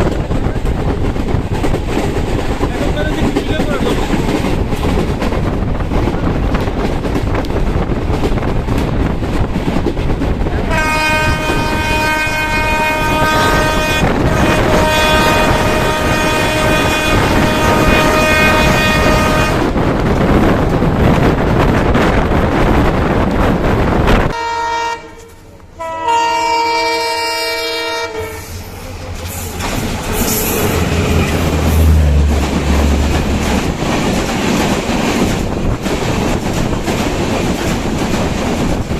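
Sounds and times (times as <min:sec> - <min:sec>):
train rail noise clickety-clack: 0:00.0 - 0:38.9
locomotive horn blast: 0:10.7 - 0:19.7, 0:24.3 - 0:28.7, 0:30.0 - 0:33.2.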